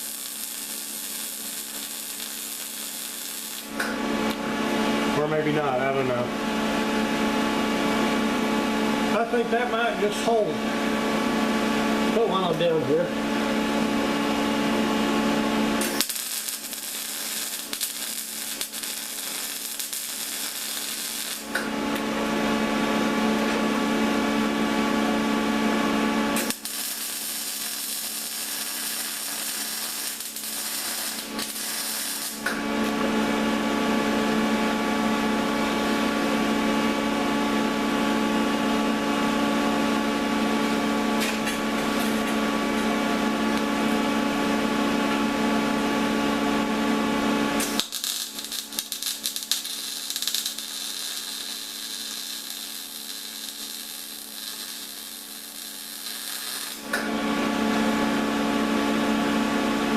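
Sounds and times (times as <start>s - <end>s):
welding arc hissing crackle: 0.0s - 4.5s, 15.7s - 22.2s, 26.3s - 33.2s, 41.2s - 42.8s, 47.6s - 57.1s
steady hum: 0.0s - 59.9s.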